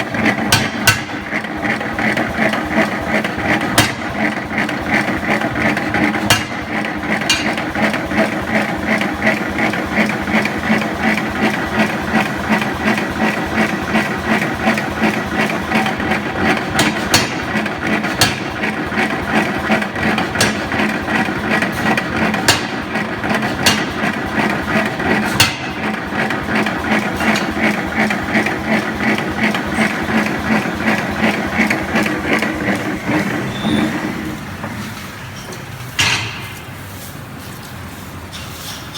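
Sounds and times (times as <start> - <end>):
forging hammer striking metal: 0.5 - 1.2, 3.7 - 4.2, 6.2 - 6.7, 16.7 - 18.8, 19.8 - 25.9.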